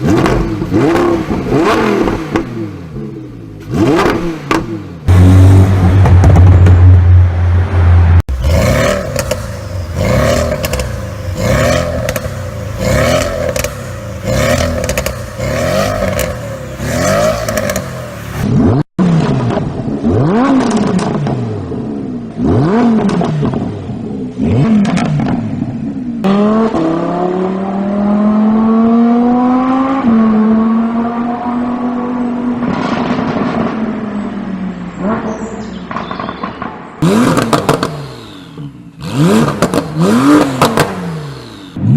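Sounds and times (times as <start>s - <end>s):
car accelerating: 0.0s - 36.0s, 37.0s - 41.9s
car exhaust drone: 5.0s - 18.5s
exhaust crackles and pops: 8.3s - 16.5s, 35.2s - 38.0s.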